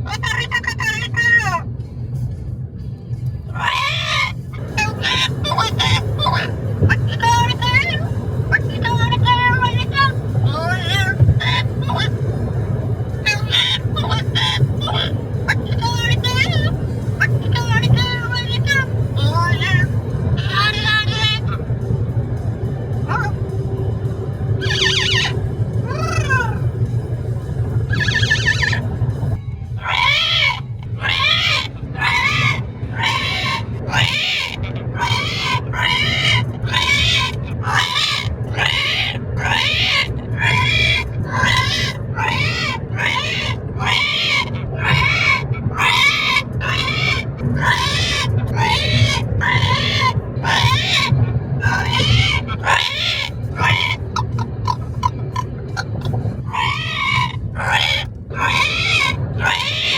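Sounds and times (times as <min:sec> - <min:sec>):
car road rumble: 0:00.0 - 0:59.9
parrot raspy call: 0:03.5 - 0:12.2, 0:13.2 - 0:21.6, 0:23.1 - 0:23.4, 0:24.6 - 0:26.7, 0:27.9 - 0:28.8, 0:29.8 - 0:59.9.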